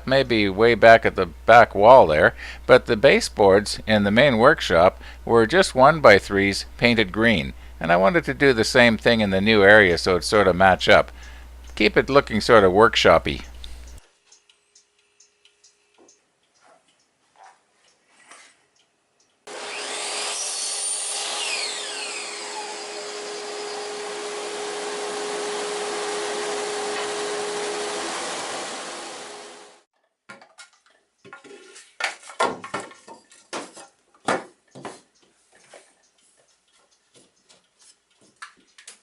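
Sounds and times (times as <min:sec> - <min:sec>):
power tool motor running: 0:19.5 - 0:29.8.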